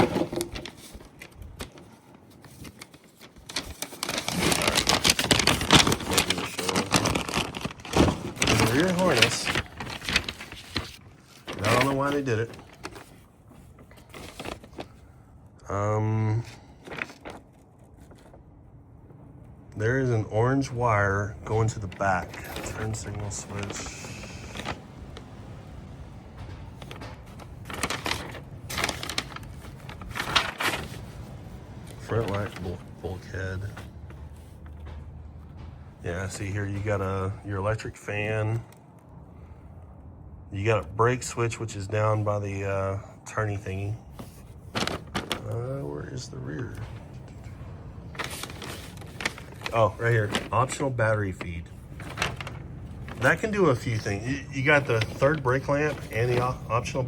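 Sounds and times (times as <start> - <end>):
wires clicking and rustling: 0.0 - 14.9, 21.4 - 36.0
low steady hum: 0.0 - 57.0.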